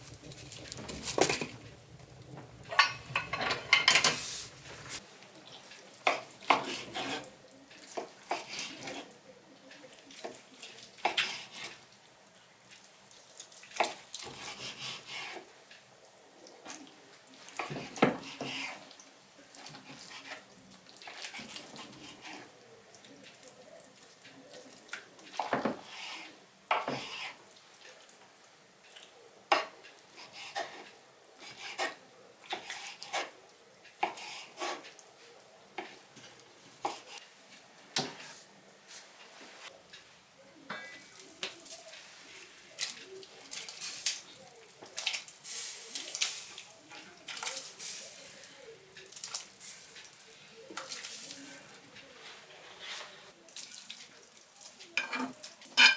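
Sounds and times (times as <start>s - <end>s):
pots and dishes clinking: 0.0s - 5.0s, 55.0s - 55.9s.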